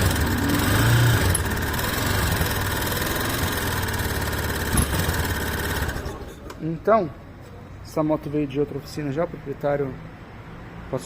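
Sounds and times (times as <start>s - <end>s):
motorcycle engine idling: 0.0s - 6.2s
mechanical noise from engine: 0.0s - 6.6s.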